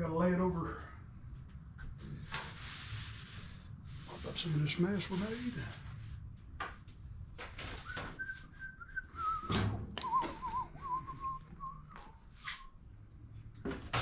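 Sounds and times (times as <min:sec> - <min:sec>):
person whistling a tune: 0:08.2 - 0:12.7.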